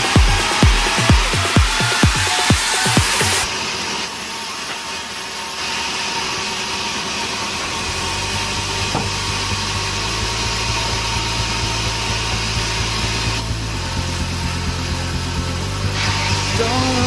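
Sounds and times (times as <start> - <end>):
sawmill machinery running: 0.0 - 17.0
low engine hum: 7.8 - 17.0.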